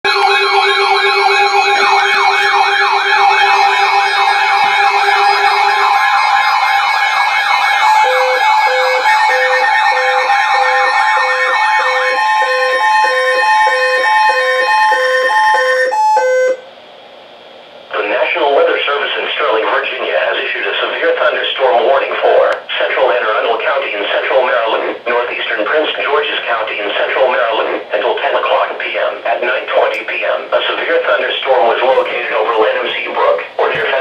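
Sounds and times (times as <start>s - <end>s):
wailing electronic siren: 0.0s - 16.7s
steady alarm tone: 0.0s - 16.8s, 25.6s - 34.0s
repeating electronic beep: 0.1s - 16.6s.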